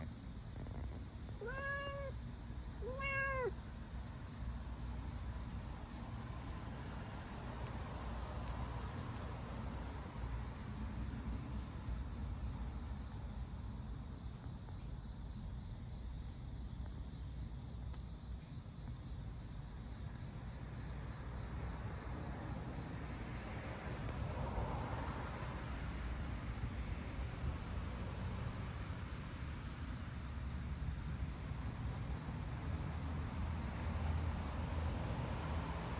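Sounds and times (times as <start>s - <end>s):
cat meowing: 1.4s - 2.2s, 2.8s - 3.6s.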